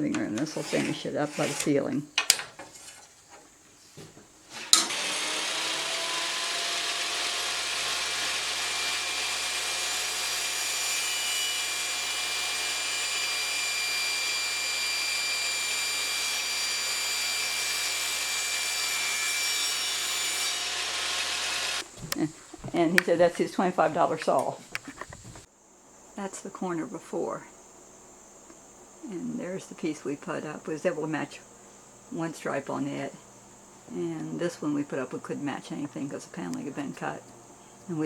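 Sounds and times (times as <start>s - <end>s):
electric power saw cutting wood: 4.5s - 21.9s.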